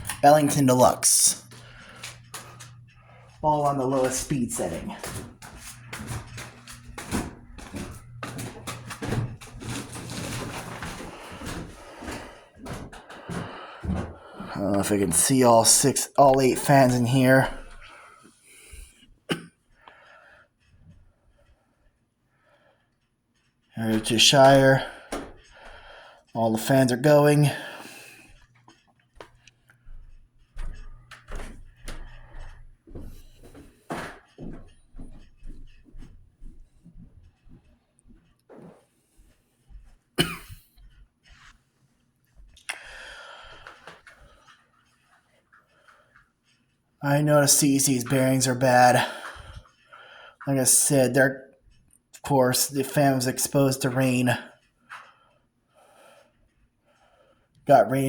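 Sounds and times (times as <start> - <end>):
knocks and rustles of handling: 0.0 - 14.8, 28.2 - 47.0
ceiling fans humming: 0.0 - 18.8
ceiling fans running: 0.0 - 18.9, 23.8 - 39.9, 47.0 - 51.3.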